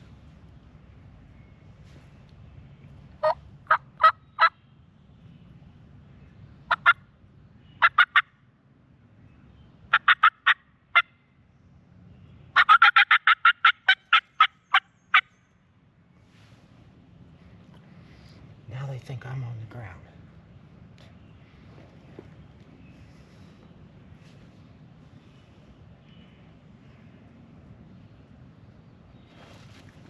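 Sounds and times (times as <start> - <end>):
turkey call cackle: 3.2 - 4.6, 6.7 - 7.0, 7.8 - 8.3, 9.9 - 11.1, 12.5 - 15.3
turkey call yelps: 3.2 - 4.6, 6.7 - 7.0, 7.8 - 8.3, 9.9 - 11.1, 12.5 - 15.3.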